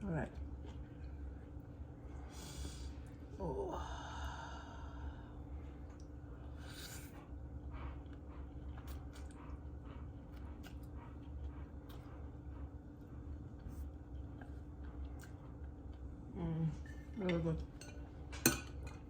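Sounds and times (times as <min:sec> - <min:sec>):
steady low hum: 0:00.0 - 0:19.0
person chewing food: 0:05.7 - 0:16.2.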